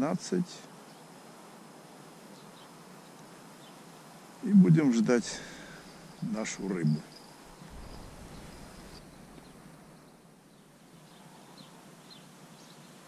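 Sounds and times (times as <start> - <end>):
steady hiss: 0.0 - 13.0
cricket trill: 4.3 - 10.3
bird chirps: 4.4 - 10.2.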